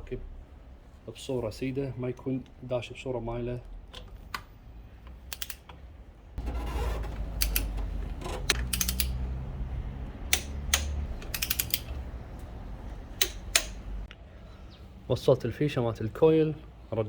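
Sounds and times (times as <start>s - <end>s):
ratchet wrench clicking: 5.3s - 5.6s, 8.4s - 9.4s, 10.2s - 12.0s, 13.2s - 13.9s.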